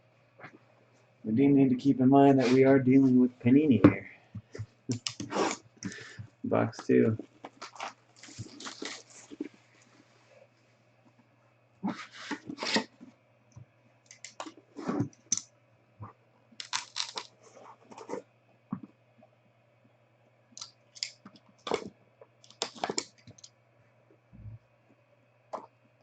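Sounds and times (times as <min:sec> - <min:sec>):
card packaging crinkling and tearing: 0:07.6 - 0:09.4, 0:16.6 - 0:17.3.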